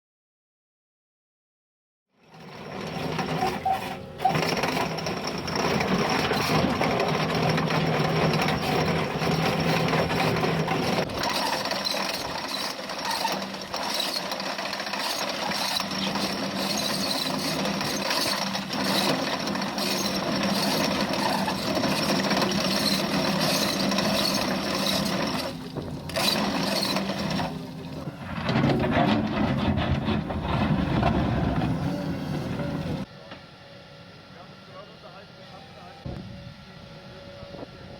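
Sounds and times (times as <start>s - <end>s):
chain cutter grinding stone: 2.4s - 27.6s.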